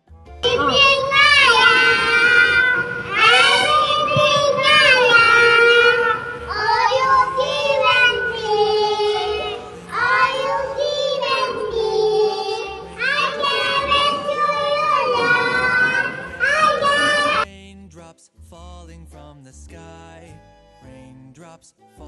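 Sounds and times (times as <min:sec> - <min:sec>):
child singing: 0:00.4 - 0:17.5.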